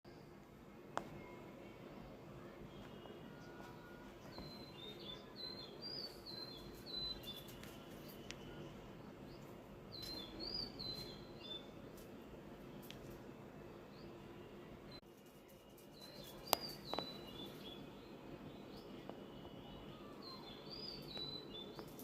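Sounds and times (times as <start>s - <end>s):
small bird chirping: 3.0s - 12.0s, 15.8s - 22.0s.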